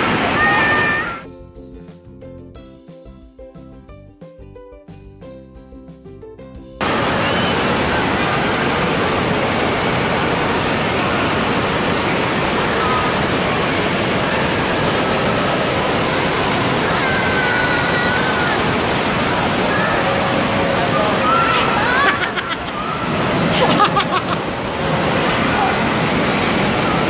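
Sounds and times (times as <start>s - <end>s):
distant shouts: 0.0s - 1.3s, 6.8s - 27.0s
water rushing: 0.0s - 1.3s, 6.8s - 27.0s
background music: 1.0s - 6.8s.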